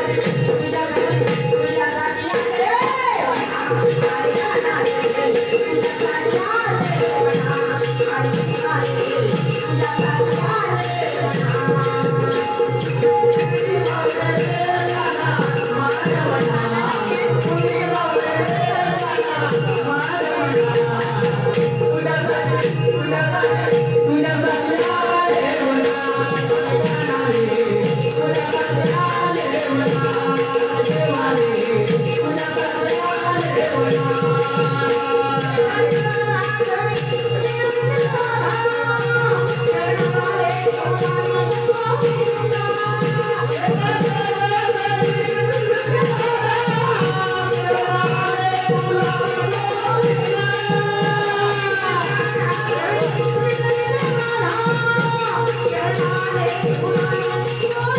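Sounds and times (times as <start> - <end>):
jingling metallic percussion: 0.0 - 57.9.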